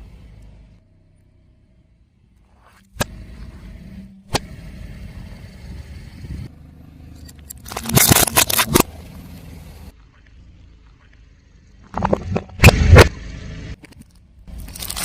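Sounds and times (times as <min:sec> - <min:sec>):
car engine and tyre rumble: 0:00.0 - 0:15.0
tyre crushing crunchy object: 0:07.6 - 0:08.9.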